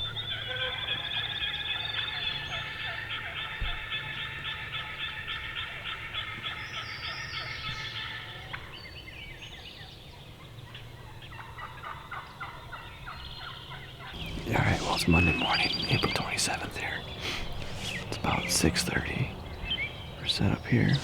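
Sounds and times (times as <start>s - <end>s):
turkeys gobbling: 11.0s - 13.3s, 14.1s - 21.0s.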